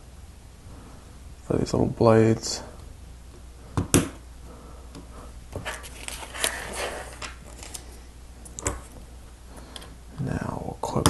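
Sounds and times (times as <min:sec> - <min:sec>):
rustling: 0:05.1 - 0:09.8.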